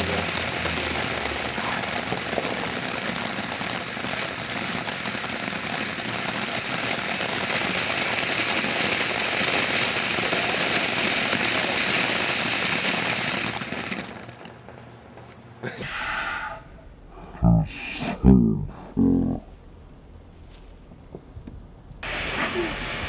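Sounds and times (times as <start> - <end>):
ground firework crackling and hissing: 0.0 - 15.8, 22.0 - 23.0.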